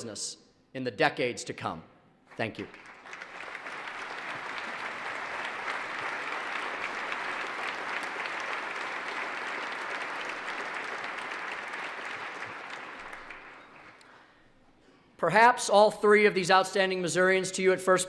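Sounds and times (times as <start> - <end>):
audience applauding: 2.5 - 14.0.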